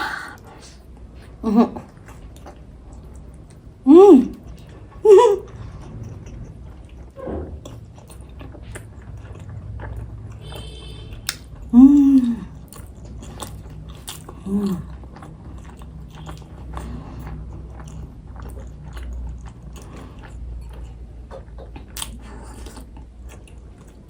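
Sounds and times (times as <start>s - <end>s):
wet chewing and mouth smacks: 0.4s - 24.0s
person humming: 3.9s - 4.4s, 5.0s - 5.5s, 11.7s - 12.5s, 14.4s - 14.8s.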